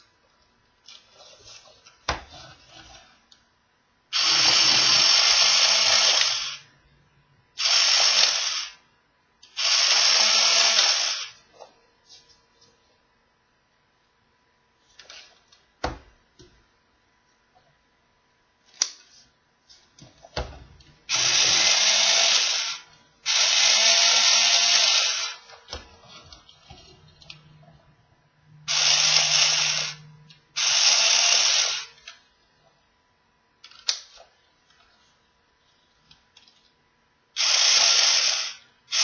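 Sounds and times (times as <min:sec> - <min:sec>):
toy power drill whirring: 0:04.1 - 0:06.7, 0:07.6 - 0:08.8, 0:09.4 - 0:11.4, 0:21.1 - 0:25.5, 0:28.7 - 0:32.1, 0:37.4 - 0:39.0.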